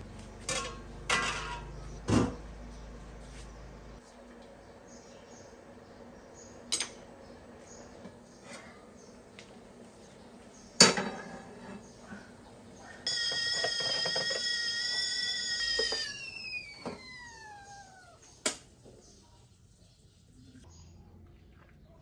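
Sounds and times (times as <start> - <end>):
kitchenware clinking: 0.5 - 2.4, 10.8 - 11.8.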